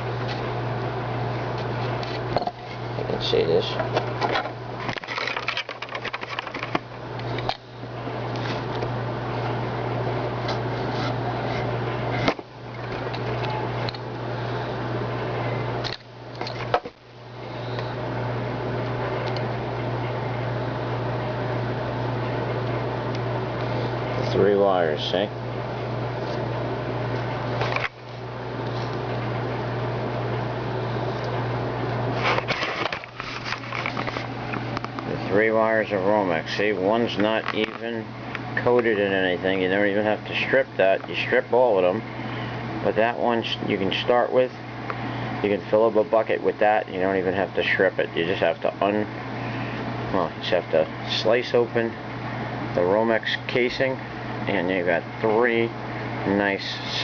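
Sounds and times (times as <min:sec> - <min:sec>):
fan-like hum and hiss: 0:00.0 - 0:57.0
wires rustling and crackling: 0:03.6 - 0:07.6, 0:32.0 - 0:39.0.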